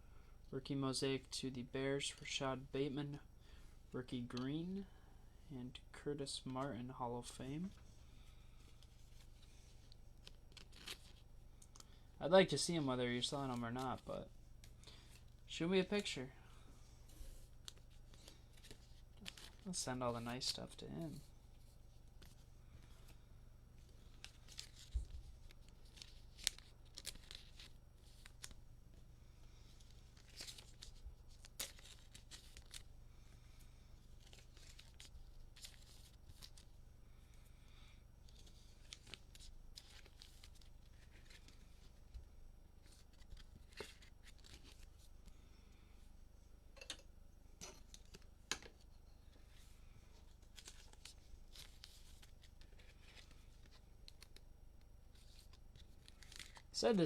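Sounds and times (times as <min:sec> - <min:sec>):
cards clicking and rustling: 0:29.8 - 0:32.9, 0:34.2 - 0:36.6, 0:42.8 - 0:44.9, 0:50.4 - 0:54.5, 0:55.1 - 0:56.6
wrappers tearing and crinkling: 0:55.2 - 0:56.7.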